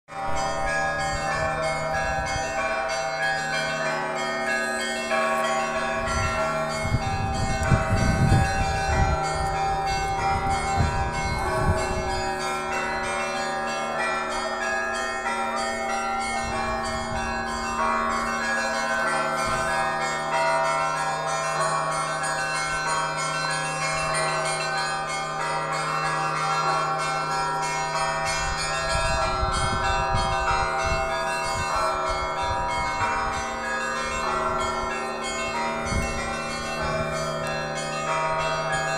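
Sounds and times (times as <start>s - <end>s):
church bells ringing: 0.1s - 38.9s.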